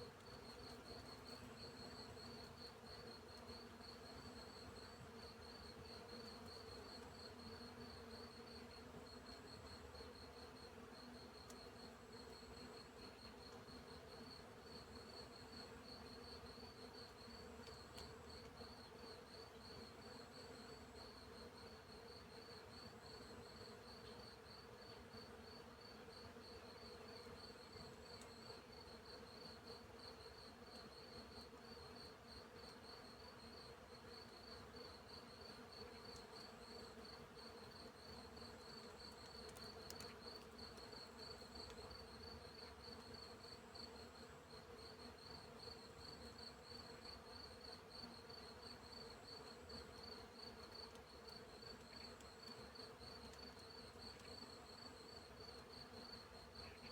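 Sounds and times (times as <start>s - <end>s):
bees buzzing hum: 0.0s - 56.9s
faint click: 17.6s - 18.5s, 39.5s - 40.5s.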